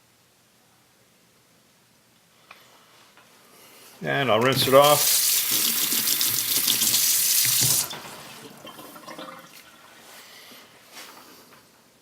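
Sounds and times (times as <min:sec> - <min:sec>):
tap water running: 0:04.5 - 0:10.0
faint handling sounds: 0:09.9 - 0:11.8.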